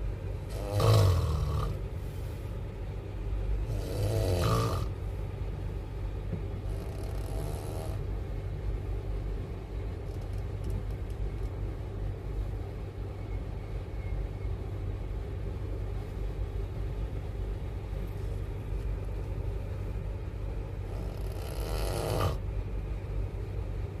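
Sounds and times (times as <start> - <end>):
train rumble: 0.0 - 24.0
person snoring: 0.5 - 1.8, 3.7 - 4.9, 20.9 - 22.4.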